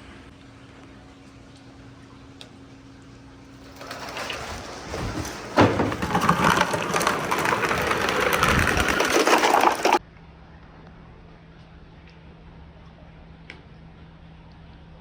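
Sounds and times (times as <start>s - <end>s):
marbles rattling on wooden track: 3.6s - 10.0s.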